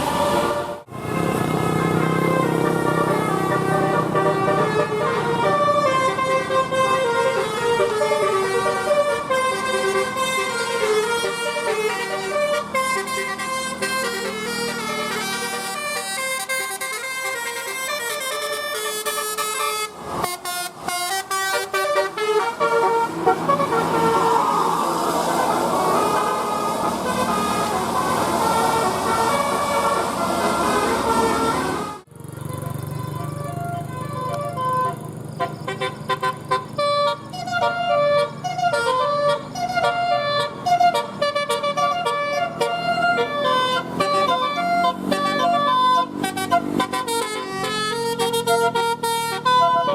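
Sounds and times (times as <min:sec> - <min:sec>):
multi-tone bus horn melody: 0:00.0 - 0:49.9
noisy rush: 0:23.0 - 0:32.0.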